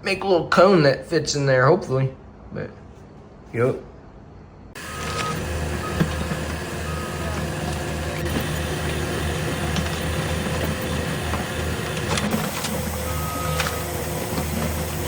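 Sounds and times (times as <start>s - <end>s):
print head high whines: 4.8s - 15.0s
stepper motors humming: 4.8s - 15.0s.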